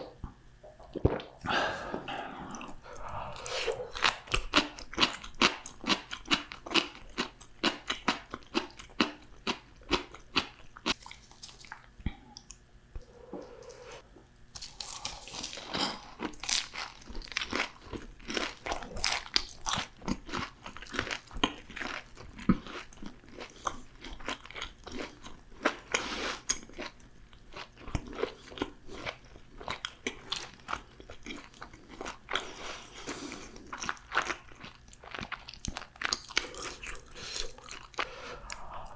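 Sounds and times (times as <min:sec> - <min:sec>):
crunching crisp food: 0:03.4 - 0:12.6, 0:14.5 - 0:38.6.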